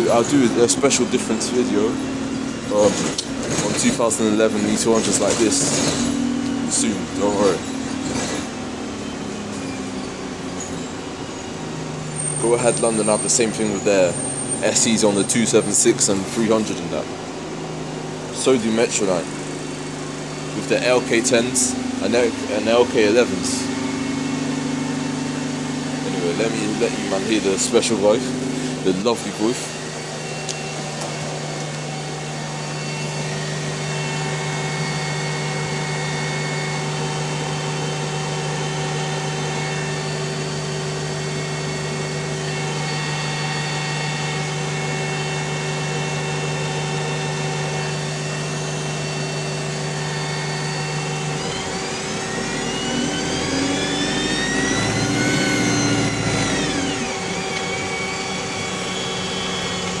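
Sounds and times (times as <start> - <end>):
bus engine running: 0.0 - 36.1
gearbox whine: 0.0 - 60.0.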